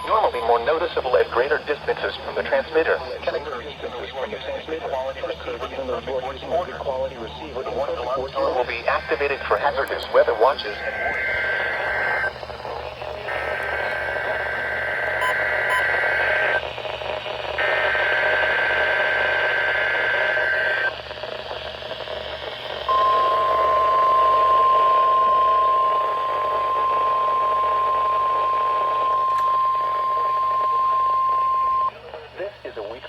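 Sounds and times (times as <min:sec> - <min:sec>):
static hiss: 0:08.4 - 0:33.0
steady alarm tone: 0:10.1 - 0:31.9
warbling digital data bursts: 0:10.1 - 0:31.9.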